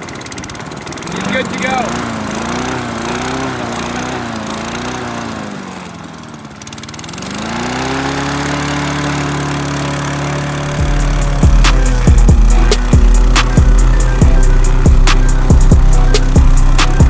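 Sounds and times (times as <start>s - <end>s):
lawn mower engine running: 0.0s - 17.0s.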